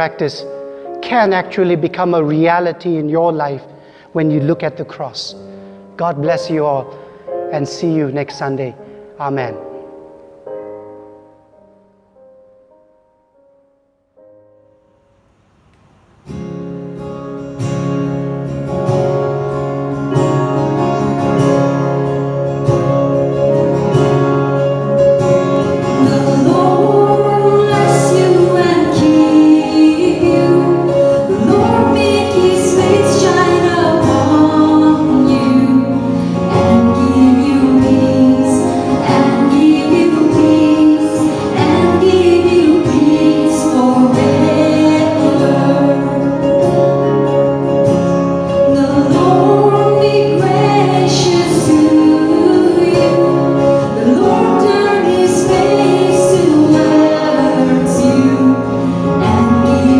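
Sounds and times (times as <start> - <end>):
guitar strumming: 15.7 - 59.9
woman singing: 25.9 - 46.9, 48.6 - 59.9.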